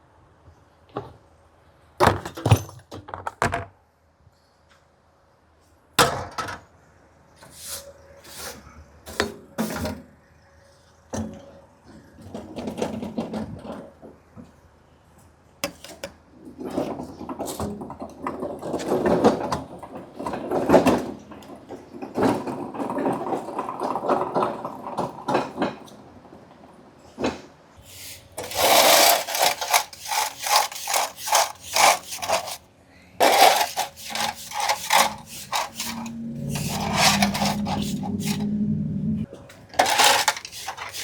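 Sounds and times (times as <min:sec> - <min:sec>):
broom sweeping concrete floor: 0:07.4 - 0:09.9, 0:27.8 - 0:32.6, 0:33.2 - 0:38.6, 0:39.8 - 0:41.0
low steady hum: 0:34.9 - 0:40.3.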